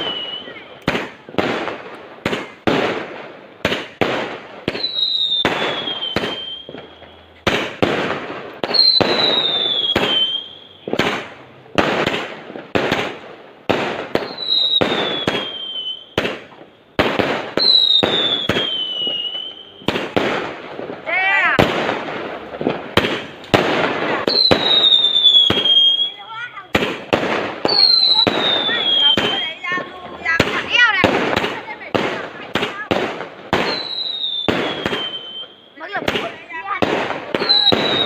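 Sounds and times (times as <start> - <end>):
descending firework whistle: 0.0 - 1.2, 4.6 - 7.8, 8.6 - 11.4, 14.1 - 20.2, 23.8 - 31.5, 33.5 - 35.9, 37.3 - 38.0
fireworks bangs: 0.0 - 38.0.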